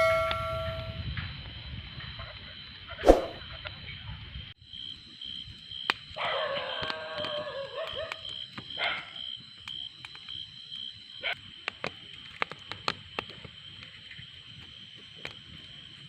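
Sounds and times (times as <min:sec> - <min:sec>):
insects trilling: 0:01.6 - 0:16.0
sharp clicks and crackles: 0:11.3 - 0:15.6.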